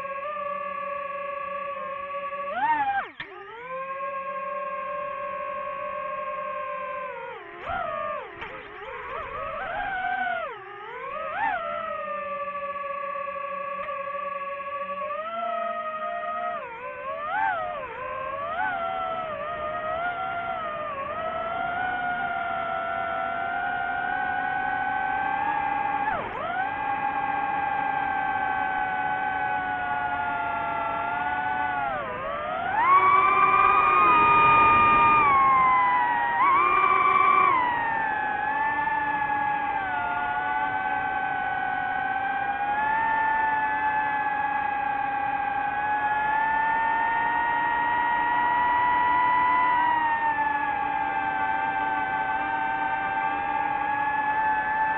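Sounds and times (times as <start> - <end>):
drone propellers whining: 0.0 - 54.9.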